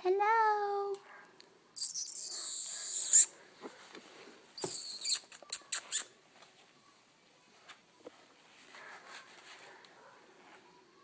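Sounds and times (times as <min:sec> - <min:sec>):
puppy squeaking: 0:01.8 - 0:03.3, 0:04.6 - 0:06.2
puppy squealing: 0:01.8 - 0:03.3, 0:04.6 - 0:06.1.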